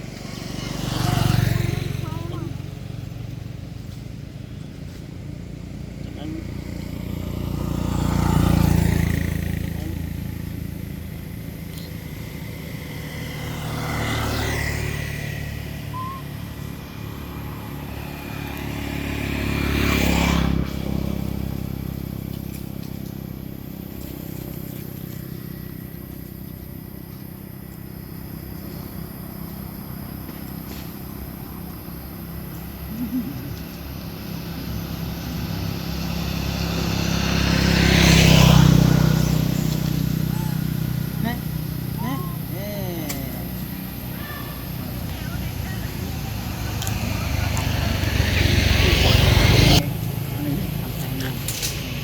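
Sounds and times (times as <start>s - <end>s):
low engine rumble: 0.0s - 52.0s
vehicles passing by: 0.0s - 52.0s.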